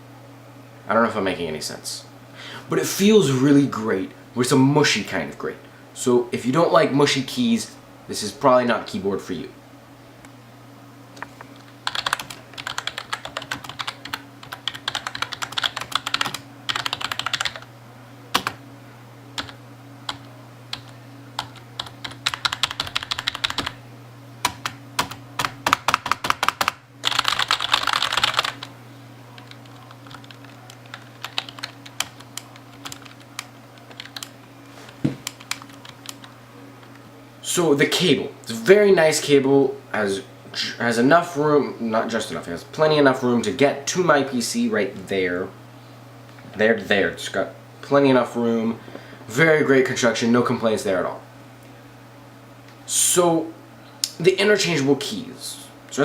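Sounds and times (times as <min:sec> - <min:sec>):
steady low hum: 0:00.0 - 0:56.0
keyboard typing: 0:11.6 - 0:17.7, 0:18.3 - 0:18.6, 0:19.4 - 0:23.8, 0:24.4 - 0:28.7, 0:29.4 - 0:34.3, 0:35.2 - 0:36.3.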